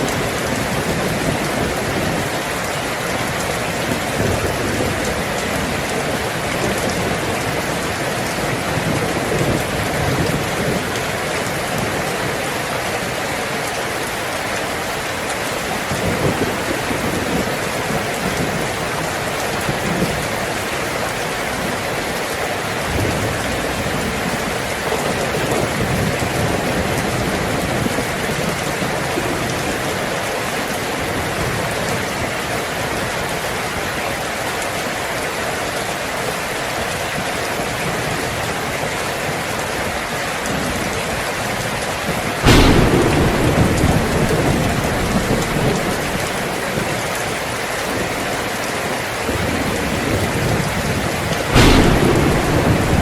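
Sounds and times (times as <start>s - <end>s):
heavy rain on a tin roof: 0.0s - 53.0s
thunderclap: 13.7s - 30.2s, 42.4s - 48.7s, 49.3s - 53.0s.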